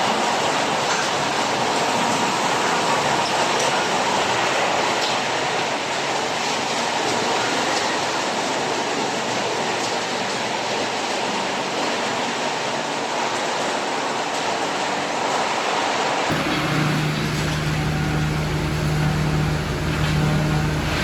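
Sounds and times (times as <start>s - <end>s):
wood-recycling machine running: 16.3s - 21.0s.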